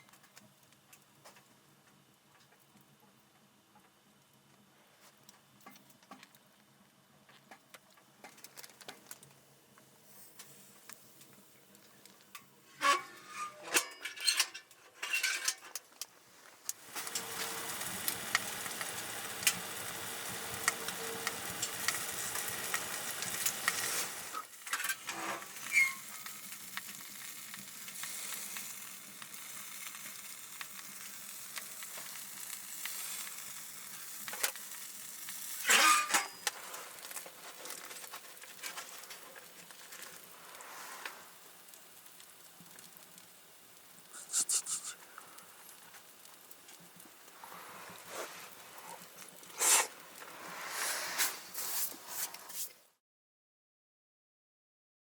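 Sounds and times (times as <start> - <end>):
food sizzling in a pan: 16.7 - 51.9.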